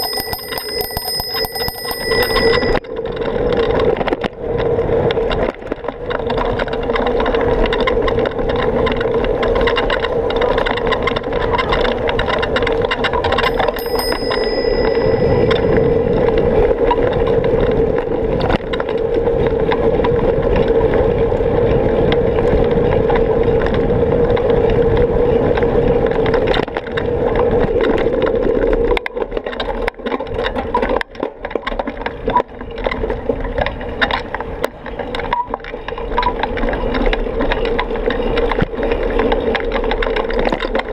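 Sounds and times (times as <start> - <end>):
brief high ring: 0.0 - 2.9, 13.4 - 16.4
wind noise: 0.0 - 40.9.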